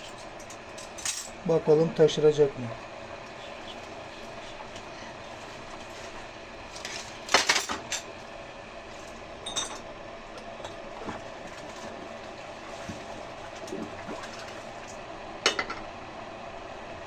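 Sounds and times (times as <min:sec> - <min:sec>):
low background hum: 0:00.0 - 0:17.0
kitchenware clinking: 0:06.9 - 0:08.1, 0:09.4 - 0:09.9, 0:15.5 - 0:15.9.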